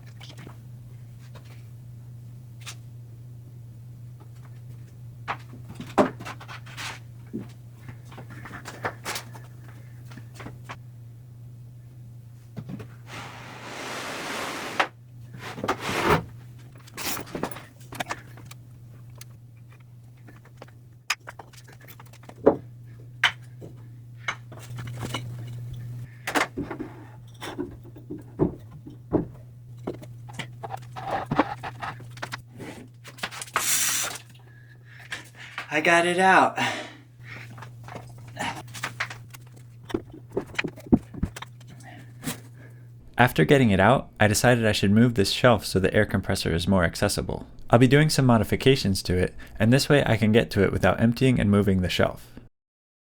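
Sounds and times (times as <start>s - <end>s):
steady low hum: 0.0s - 14.0s, 14.6s - 52.5s
object scraping on shelf: 13.0s - 16.3s
objects knocking and clattering: 19.8s - 33.5s, 37.5s - 41.9s.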